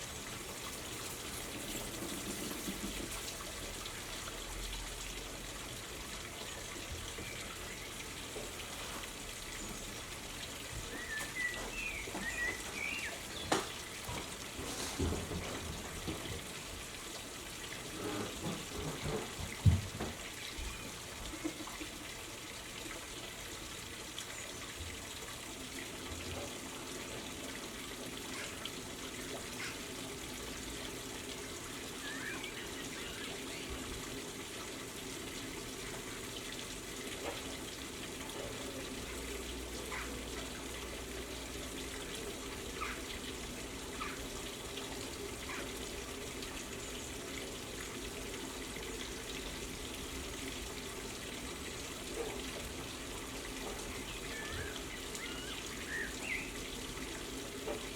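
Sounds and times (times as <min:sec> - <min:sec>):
hiss-like outdoor background noise: 0:00.0 - 0:57.9
faint bird chirps: 0:32.0 - 0:33.8.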